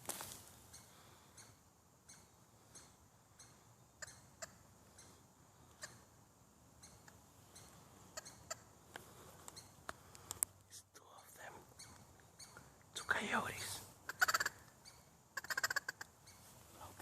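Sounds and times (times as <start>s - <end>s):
squirrel alarm chirps: 0.7s - 5.2s, 6.8s - 8.7s, 9.6s - 9.8s, 11.8s - 13.2s, 14.1s - 16.5s.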